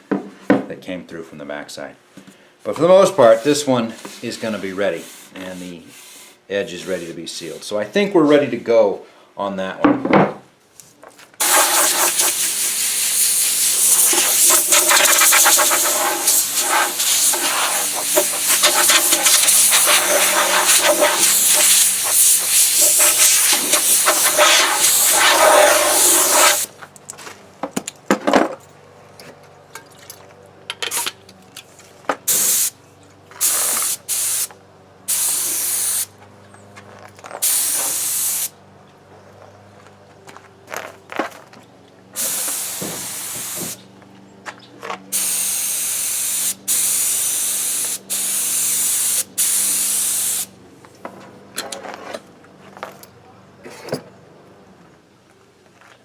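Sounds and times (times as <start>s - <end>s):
spray can hissing: 11.4s - 26.7s, 32.3s - 32.7s, 33.4s - 34.5s, 35.1s - 36.1s, 37.4s - 38.5s, 42.2s - 43.8s, 45.1s - 50.5s.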